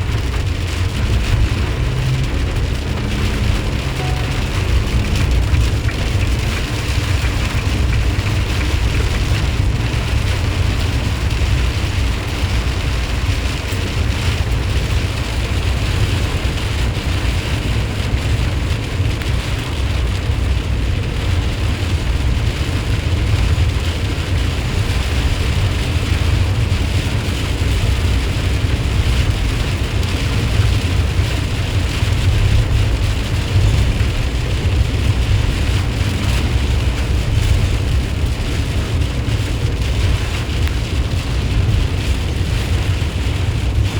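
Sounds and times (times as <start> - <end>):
heavy rain hissing: 0.0 - 13.3
van road and engine rumble: 0.0 - 43.9.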